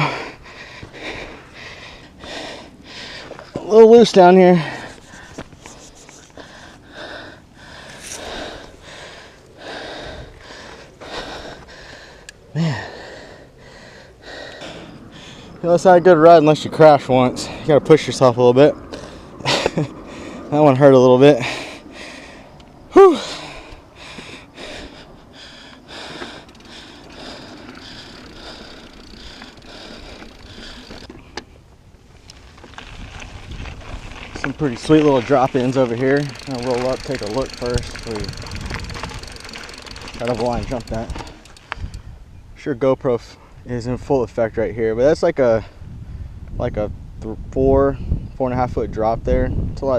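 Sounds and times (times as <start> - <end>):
person breathing hard: 0.0 - 3.5, 4.6 - 15.6, 20.0 - 20.5, 21.4 - 31.4
bike rolling on dirt: 0.0 - 42.4.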